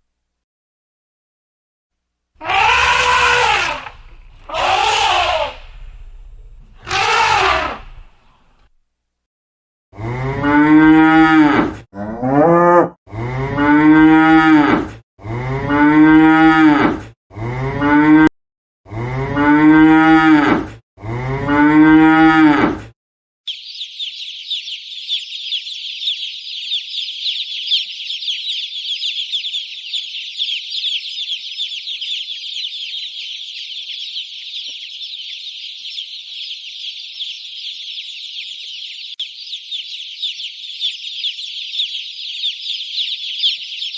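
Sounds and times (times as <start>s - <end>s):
cattle mooing: 2.4s - 6.0s, 6.8s - 8.0s, 10.0s - 18.3s, 18.9s - 22.8s.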